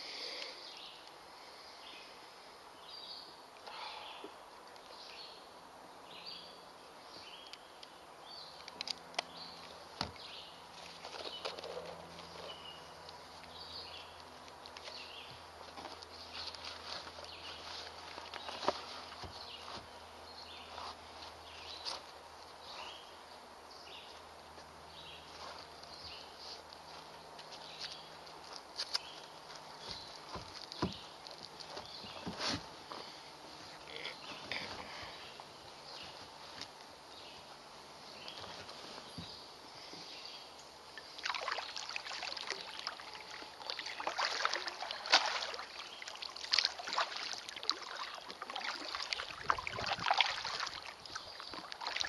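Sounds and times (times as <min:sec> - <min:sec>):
birds chirping: 0:00.0 - 0:52.0
water splashing from paddle: 0:41.2 - 0:52.0.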